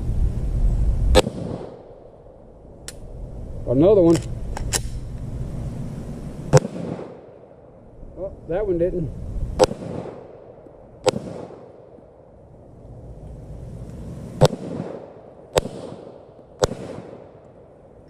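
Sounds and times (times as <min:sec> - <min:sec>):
pistol shots: 0:01.1 - 0:01.8, 0:06.5 - 0:07.6, 0:09.6 - 0:12.0, 0:14.4 - 0:17.4.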